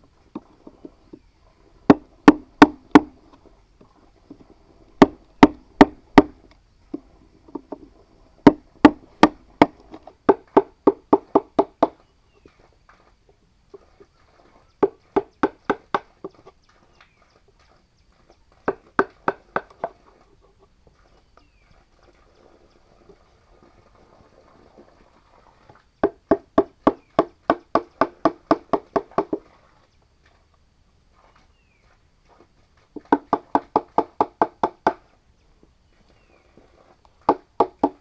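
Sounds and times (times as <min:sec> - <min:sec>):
tool knocking on wood: 0:01.9 - 0:03.2, 0:05.0 - 0:12.0, 0:14.8 - 0:16.4, 0:18.7 - 0:20.0, 0:26.0 - 0:29.4, 0:33.0 - 0:35.0, 0:37.3 - 0:38.0.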